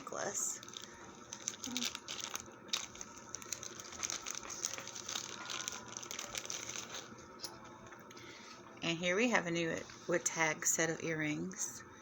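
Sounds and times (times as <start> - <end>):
packaging rustling and crinkling: 0.6 - 7.2.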